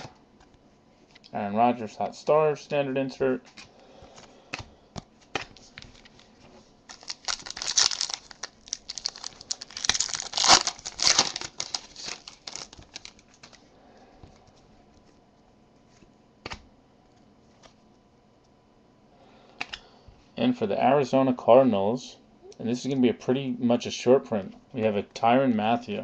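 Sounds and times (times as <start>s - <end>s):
wrapper tearing and crinkling: 6.9s - 13.6s.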